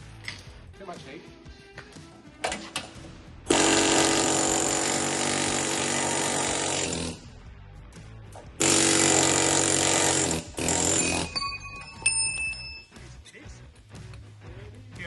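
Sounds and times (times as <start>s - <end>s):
pneumatic air hammer: 3.5s - 7.2s, 8.6s - 11.4s.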